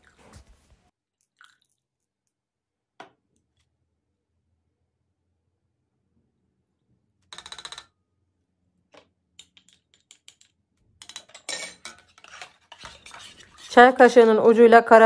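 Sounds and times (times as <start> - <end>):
teaspoon tapping containers: 9.0 - 13.3.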